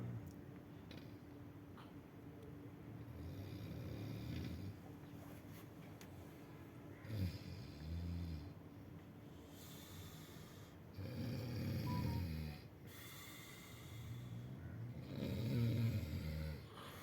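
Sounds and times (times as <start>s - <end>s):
quiet breathing: 9.2s - 17.0s
low snoring: 10.9s - 17.0s.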